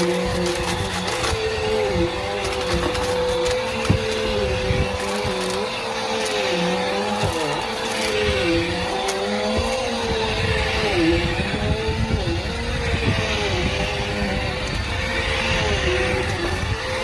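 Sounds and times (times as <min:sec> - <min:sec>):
debris crunching in vacuum: 0:00.0 - 0:17.0
vacuum cleaner running: 0:00.0 - 0:17.0.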